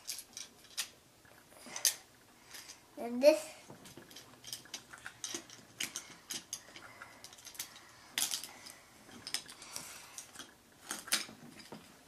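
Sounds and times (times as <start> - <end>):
plastic toy bricks clicking: 0.0 - 0.9, 3.8 - 8.5.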